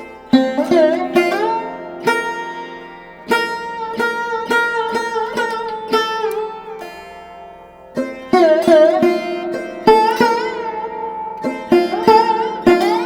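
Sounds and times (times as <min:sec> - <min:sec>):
plucked string instrument: 0:00.0 - 0:13.0.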